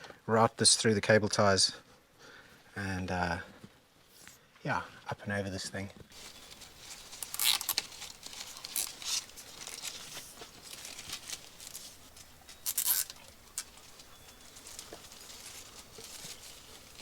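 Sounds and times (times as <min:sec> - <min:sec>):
cable ties zipping tight: 0:07.1 - 0:10.0, 0:10.8 - 0:13.8.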